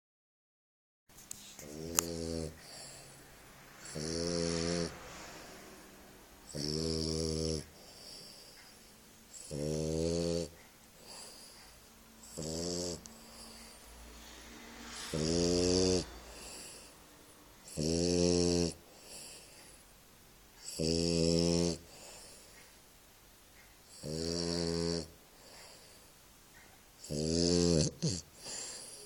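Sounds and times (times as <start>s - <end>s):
dog breathing quietly: 1.5s - 9.8s, 10.4s - 17.9s, 18.7s - 19.9s, 21.7s - 22.8s, 23.6s - 27.2s, 28.3s - 29.0s
dog snoring: 1.6s - 5.6s, 6.4s - 19.8s, 20.6s - 22.6s, 23.8s - 26.0s, 27.0s - 29.0s.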